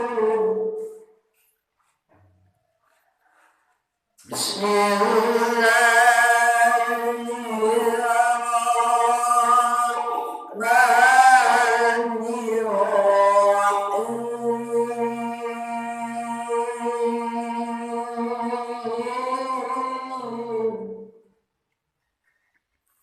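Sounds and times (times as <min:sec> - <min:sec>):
man chanting: 0:00.0 - 0:01.0, 0:04.2 - 0:21.2.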